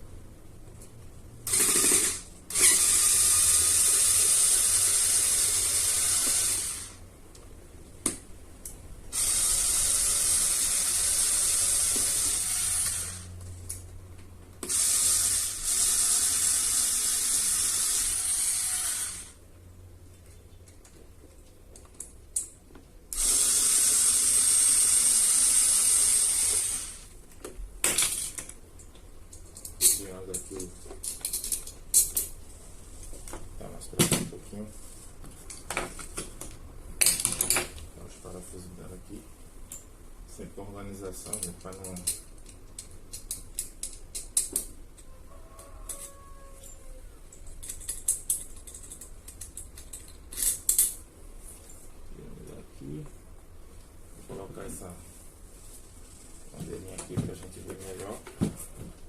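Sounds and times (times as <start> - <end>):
electric screwdriver running: 1.5 - 7.0, 9.2 - 13.3, 14.6 - 19.4, 23.2 - 27.1.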